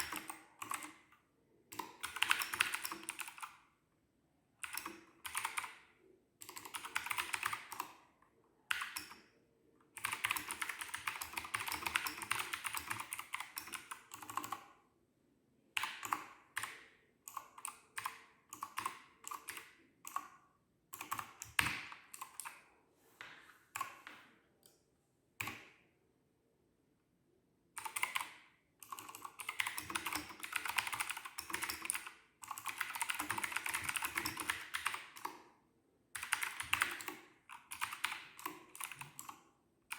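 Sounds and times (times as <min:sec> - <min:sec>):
mechanical keyboard typing: 0:00.0 - 0:01.1, 0:01.7 - 0:03.6, 0:04.6 - 0:08.0, 0:08.7 - 0:09.2, 0:10.0 - 0:14.8, 0:15.8 - 0:20.3, 0:21.0 - 0:22.6, 0:27.8 - 0:35.4, 0:36.2 - 0:39.4.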